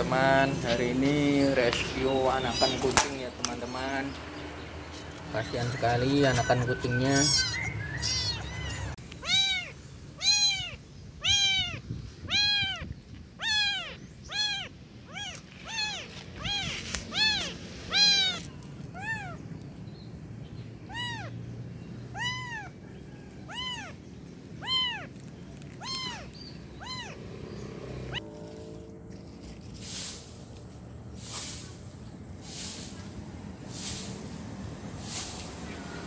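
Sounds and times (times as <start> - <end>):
kitten meowing: 2.3 - 3.6, 6.3 - 19.4, 20.9 - 21.3, 22.1 - 22.8, 23.5 - 24.0, 24.6 - 27.2.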